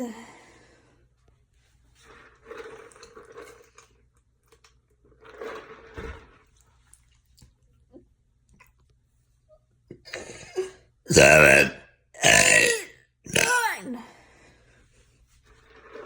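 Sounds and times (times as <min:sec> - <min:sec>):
swallowing and gulping: 0:02.1 - 0:08.8, 0:11.1 - 0:13.8
burps: 0:10.1 - 0:14.0
wet mouth and throat sounds: 0:11.1 - 0:13.8.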